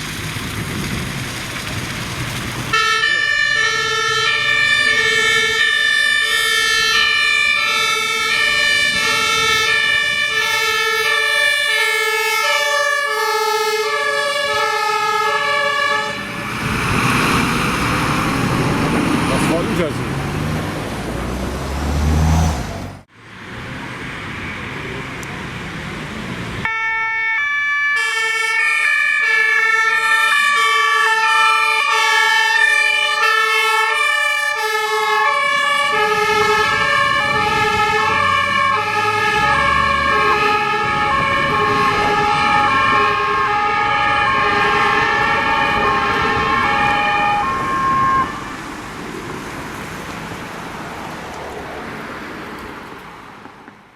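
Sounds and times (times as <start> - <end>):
heavy vehicle engine rumbling: 0.0 - 26.7, 31.9 - 51.3
road noise: 0.0 - 53.9
two-tone siren: 2.7 - 16.5, 26.6 - 48.8.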